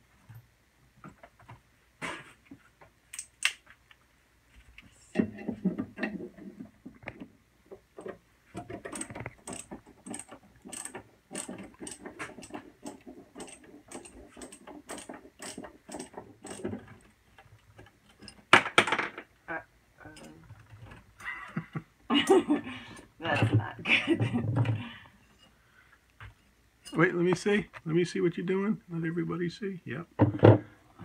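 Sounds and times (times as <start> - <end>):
metal tools and hardware rattling: 8.7 - 17.1.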